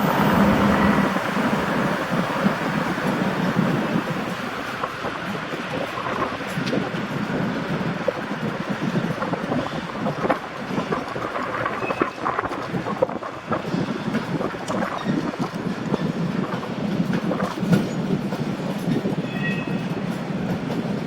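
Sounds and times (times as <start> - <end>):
high wheel squeal: 0.0 - 4.7, 19.2 - 19.9
train rolling rumble: 0.0 - 21.0
wheels clattering over rail joints: 0.0 - 21.0.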